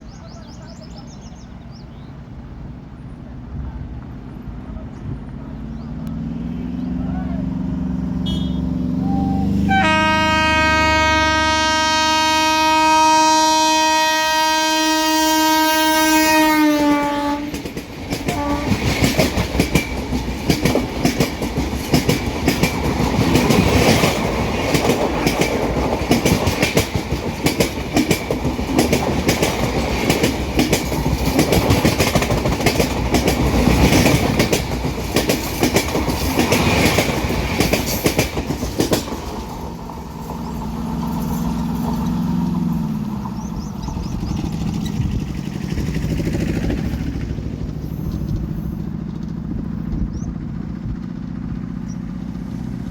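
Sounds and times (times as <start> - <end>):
locomotive horn blast: 7.9 - 17.6, 18.3 - 19.0
train wheels clacking over rail joints: 16.0 - 52.8.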